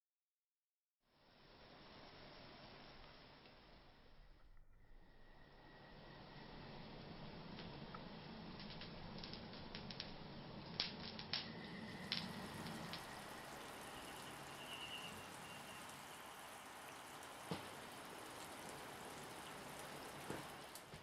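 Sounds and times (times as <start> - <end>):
steady hiss: 1.2 - 21.0
campfire crackling pops: 7.5 - 16.4, 17.2 - 21.0.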